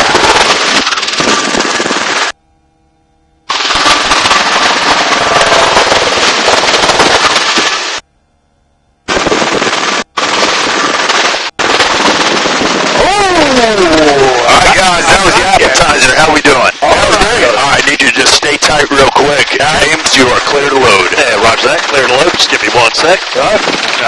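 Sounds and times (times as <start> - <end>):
helicopter rotor: 0.0 - 2.4, 3.5 - 8.0, 9.0 - 24.0
wind noise: 0.0 - 2.4, 9.1 - 18.0.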